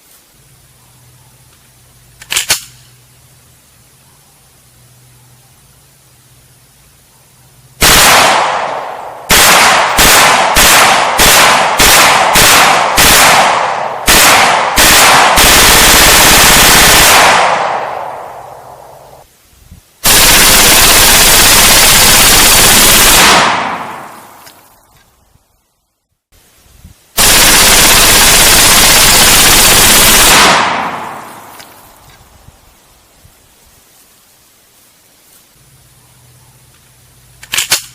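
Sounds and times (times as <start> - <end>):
submachine gun firing: 7.8 - 18.3, 20.0 - 24.3, 27.2 - 31.5.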